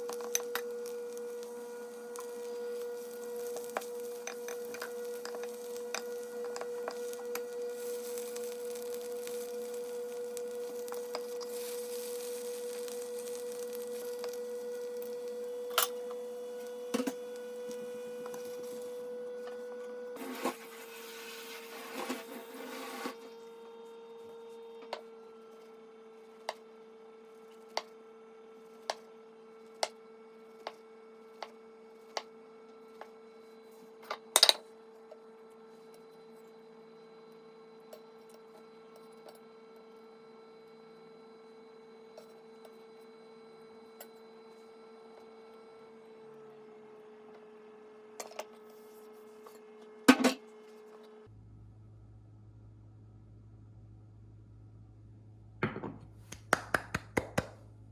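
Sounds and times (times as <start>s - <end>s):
egg sizzling in a pan: 0.0s - 19.0s, 20.2s - 23.2s
high electrical hum: 0.0s - 39.8s.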